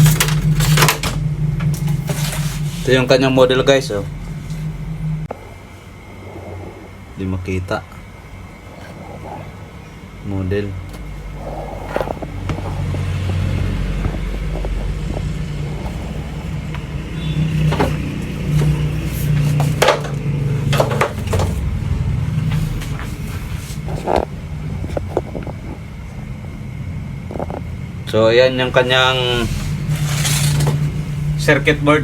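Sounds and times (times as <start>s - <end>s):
steady low rumble: 0.0s - 32.0s.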